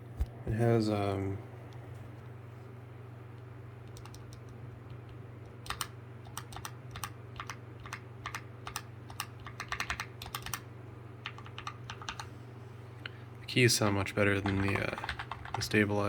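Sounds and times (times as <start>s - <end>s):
mechanical keyboard typing: 3.9s - 4.4s, 5.6s - 10.6s, 11.2s - 12.3s, 14.4s - 15.8s.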